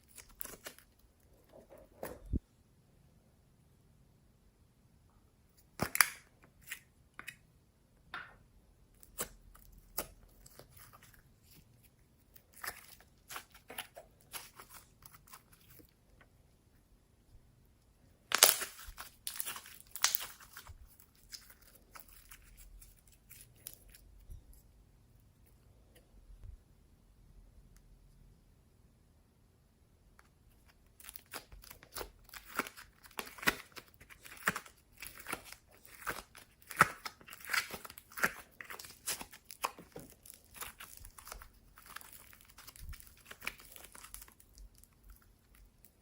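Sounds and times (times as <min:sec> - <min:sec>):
slime squishing with sticky pops: 0:18.3 - 0:24.0, 0:30.6 - 0:46.0.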